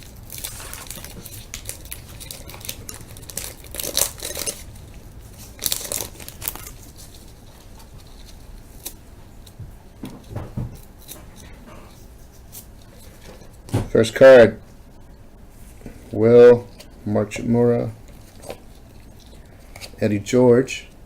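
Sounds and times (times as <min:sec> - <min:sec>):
wrapper tearing and crinkling: 0:00.0 - 0:09.0.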